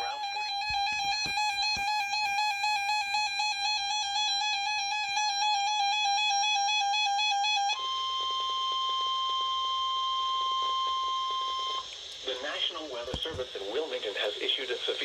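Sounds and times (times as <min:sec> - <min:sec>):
radio static: 0:00.0 - 0:02.3, 0:12.2 - 0:15.0
warbling electronic alert tone: 0:00.0 - 0:08.7
steady alarm tone: 0:00.0 - 0:12.7.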